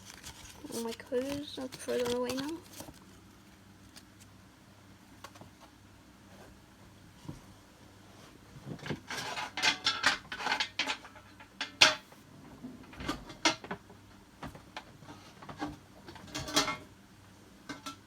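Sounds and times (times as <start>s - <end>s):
cards and packaging rustling: 0.0s - 4.3s.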